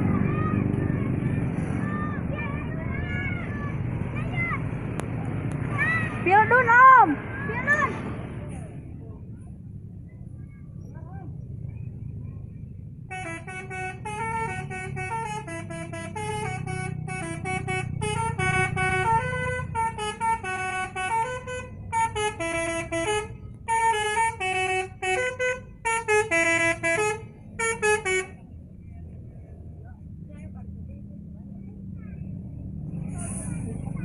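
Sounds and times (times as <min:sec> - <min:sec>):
multi-tone bus horn tune: 0:13.1 - 0:28.6.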